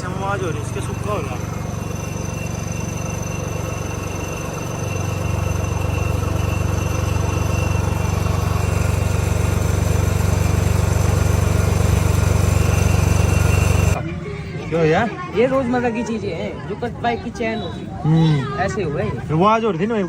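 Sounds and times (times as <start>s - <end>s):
engine running at low speed: 0.0s - 14.0s.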